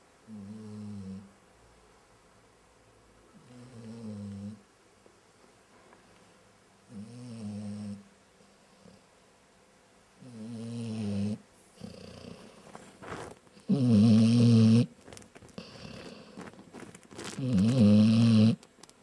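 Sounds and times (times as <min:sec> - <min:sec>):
dog snoring: 0:00.3 - 0:01.3, 0:03.3 - 0:04.6, 0:06.9 - 0:08.1, 0:10.2 - 0:14.9, 0:15.6 - 0:16.6, 0:17.2 - 0:18.6.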